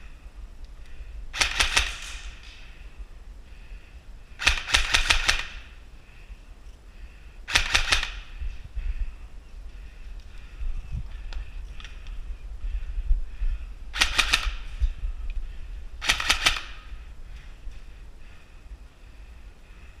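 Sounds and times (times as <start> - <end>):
airsoft gun rapid shots: 1.3 - 2.4, 4.4 - 5.8, 7.5 - 8.4, 13.9 - 14.7, 16.0 - 17.0.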